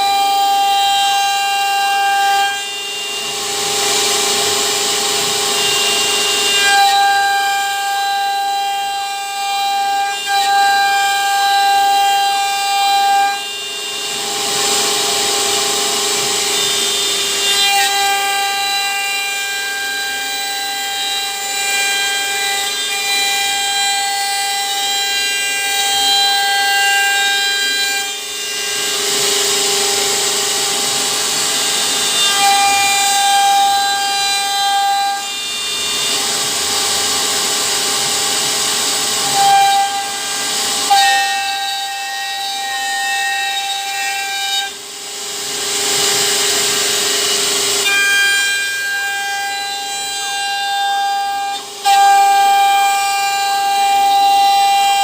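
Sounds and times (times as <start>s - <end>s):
cutter milling wood: 0.0s - 55.0s
router spindle whining: 0.0s - 55.0s.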